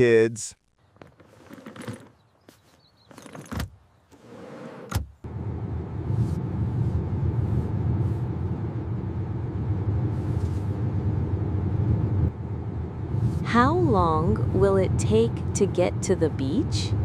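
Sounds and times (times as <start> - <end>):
car running rumble: 4.9 - 17.0.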